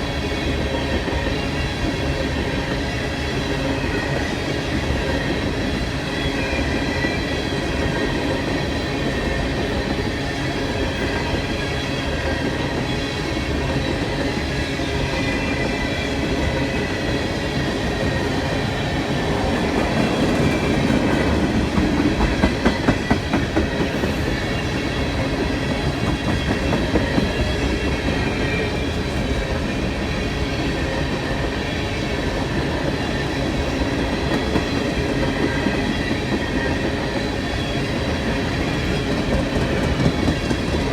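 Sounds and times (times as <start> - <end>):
freight train cars rumbling: 0.0 - 40.9
wheels clacking over rail joints: 16.8 - 24.3.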